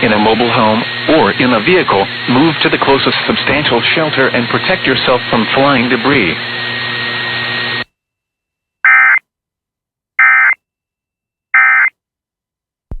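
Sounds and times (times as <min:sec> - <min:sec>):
buzzing data tone bursts: 0:08.9 - 0:09.2, 0:10.2 - 0:10.6, 0:11.6 - 0:11.9.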